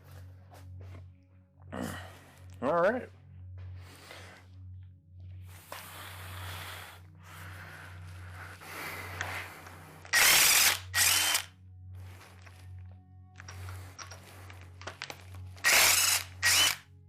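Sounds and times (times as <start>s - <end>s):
power drill spinning out bolts: 10.0s - 11.5s, 13.4s - 16.8s
tool clinks and handling: 13.4s - 15.7s.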